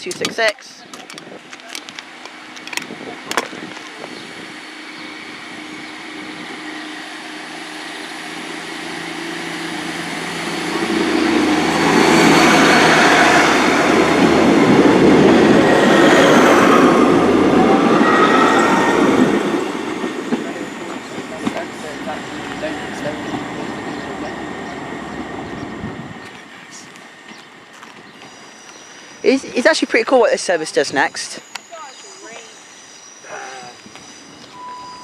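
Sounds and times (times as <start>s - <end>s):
diesel train engines: 0.0s - 35.0s
rail and wheel noise: 0.0s - 35.0s
high rising and falling tones: 5.0s - 26.2s.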